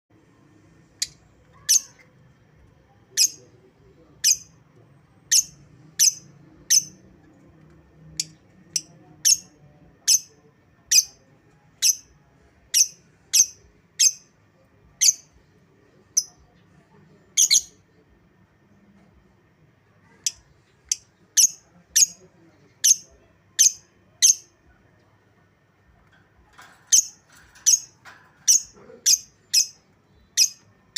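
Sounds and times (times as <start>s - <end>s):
bird chirping high-pitched: 1.0s - 2.1s, 3.2s - 3.5s, 4.2s - 4.6s, 5.3s - 7.1s, 8.2s - 11.2s, 11.8s - 14.3s, 15.0s - 15.4s, 17.4s - 17.8s, 20.2s - 22.2s, 22.8s - 24.5s, 26.8s - 30.7s.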